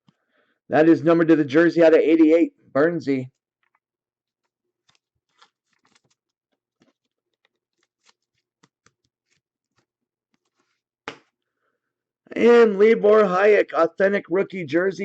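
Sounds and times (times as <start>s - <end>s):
trading cards clicking and rustling: 4.8s - 11.3s.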